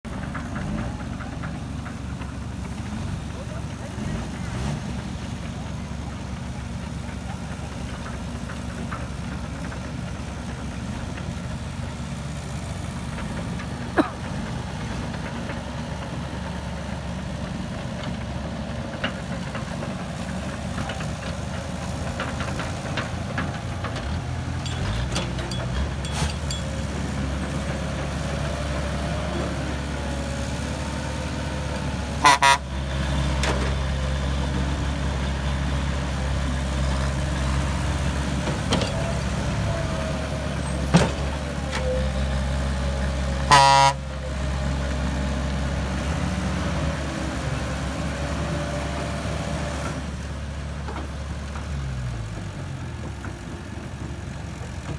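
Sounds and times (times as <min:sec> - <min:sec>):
diesel engine running: 0:00.0 - 0:54.9
vehicle horn honking: 0:32.2 - 0:32.8, 0:43.5 - 0:44.1.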